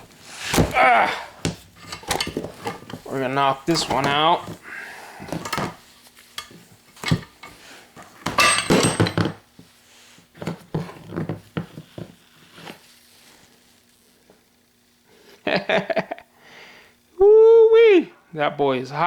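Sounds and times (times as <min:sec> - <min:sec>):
hammer clanking on steel sockets: 0:01.8 - 0:04.6, 0:05.3 - 0:05.8, 0:06.4 - 0:09.4.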